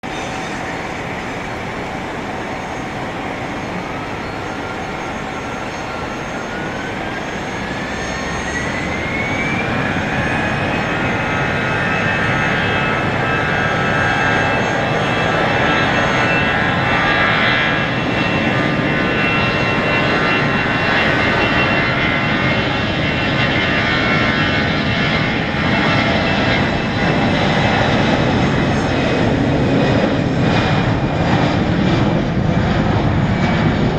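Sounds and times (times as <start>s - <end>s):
jet engines spooling up: 0.0s - 33.9s.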